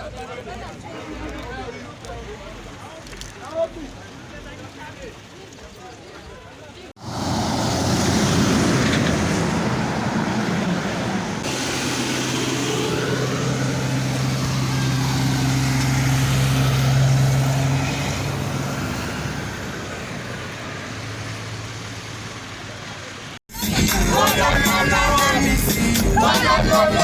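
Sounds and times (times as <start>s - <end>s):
vehicle engine humming: 7.0s - 27.0s.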